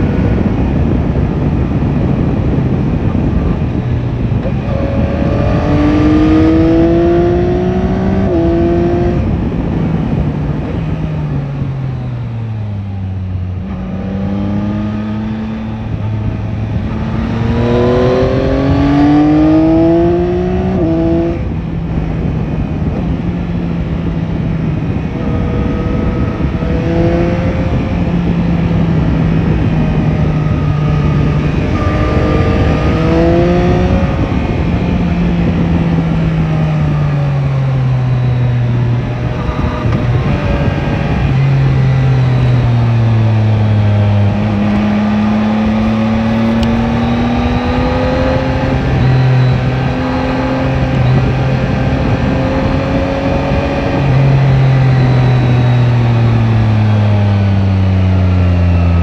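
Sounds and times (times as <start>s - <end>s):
motorcycle engine accelerating: 0.0s - 59.0s.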